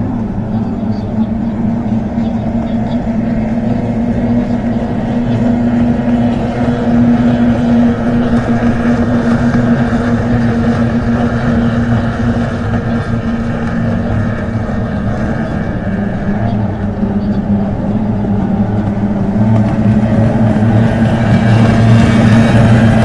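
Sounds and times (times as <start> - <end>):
churning water wash: 0.0 - 23.0
motorboat engine drone: 0.0 - 23.0.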